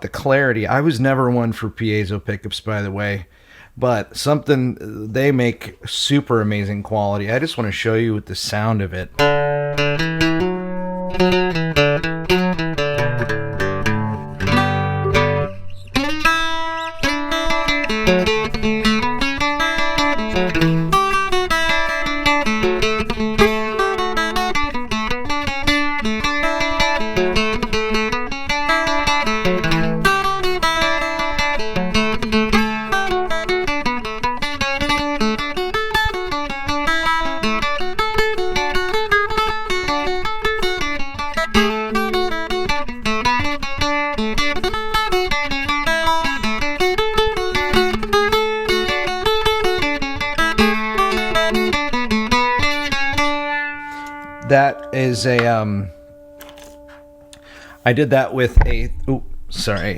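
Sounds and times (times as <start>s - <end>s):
fast picked mandolin melody: 8.4s - 55.8s
mandolin chord: 9.2s - 57.6s.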